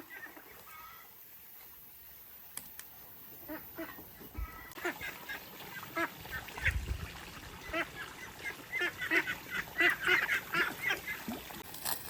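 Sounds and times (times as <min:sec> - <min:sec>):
ducks or geese calling: 0:00.0 - 0:01.1, 0:03.4 - 0:11.3.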